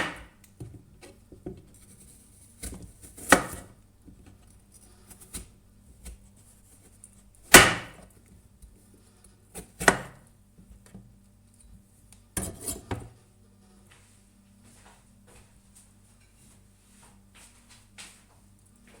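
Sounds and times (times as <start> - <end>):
knife chopping on cutting board: 0.0 - 0.3, 1.4 - 3.7, 7.5 - 8.0, 9.6 - 10.2.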